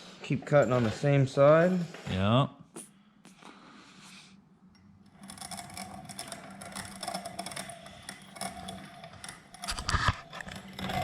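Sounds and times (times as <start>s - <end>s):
piston ring filer grinding: 5.0s - 11.0s.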